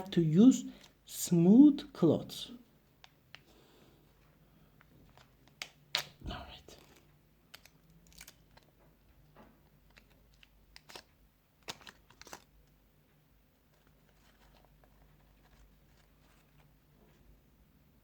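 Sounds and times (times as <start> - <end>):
faint rustles and taps: 13.1 - 17.4.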